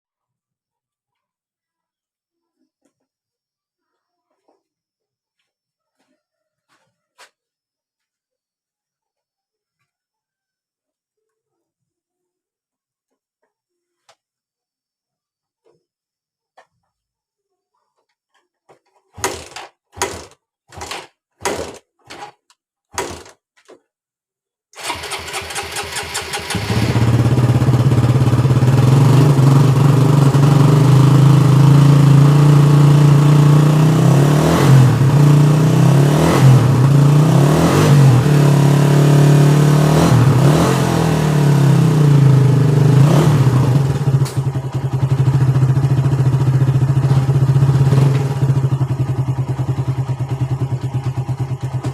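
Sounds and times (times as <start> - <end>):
motorcycle engine cranking: 19.1 - 23.4, 24.8 - 28.6, 44.0 - 51.9
motorcycle engine running and revving: 24.8 - 51.9.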